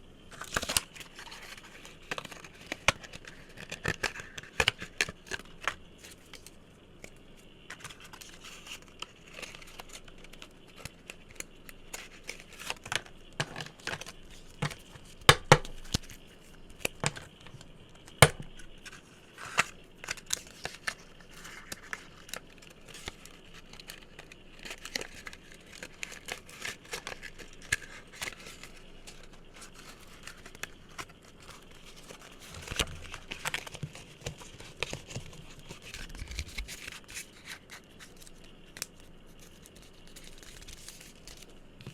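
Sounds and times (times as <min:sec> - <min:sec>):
crisp rustling: 0:07.7 - 0:41.9.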